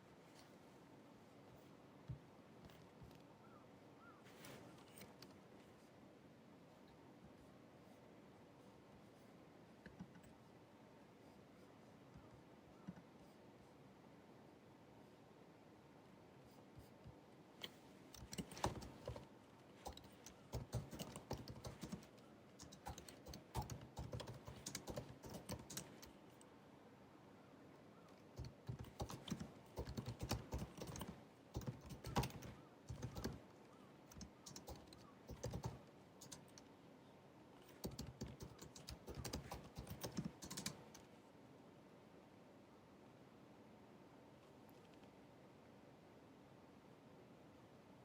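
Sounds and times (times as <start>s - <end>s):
laptop keyboard typing: 17.6s - 26.3s, 28.4s - 36.6s, 37.6s - 41.1s.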